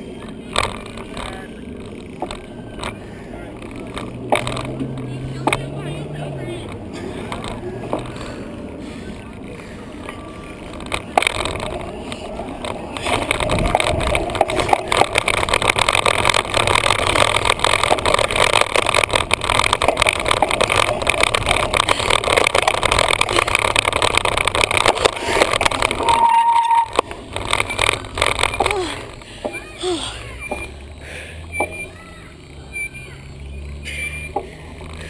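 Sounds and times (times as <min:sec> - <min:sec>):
camera mount rattling: 0:10.7 - 0:29.2
wind buffeting microphone: 0:11.5 - 0:14.8.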